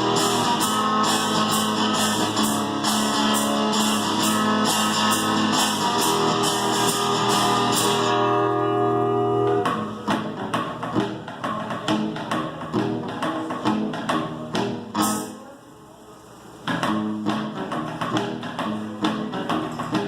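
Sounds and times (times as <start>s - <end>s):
acoustic guitar playing: 0.0s - 15.5s, 16.6s - 20.0s
guitar body taps: 16.7s - 20.0s.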